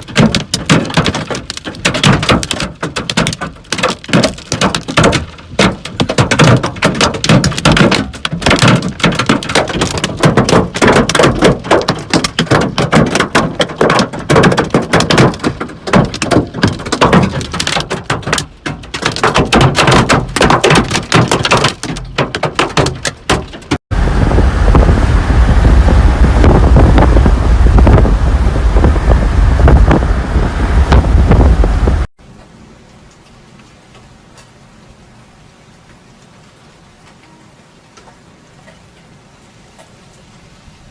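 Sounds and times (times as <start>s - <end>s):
hailstones pelting a hard surface: 0.0s - 23.8s
wind buffeting the microphone: 23.9s - 32.1s.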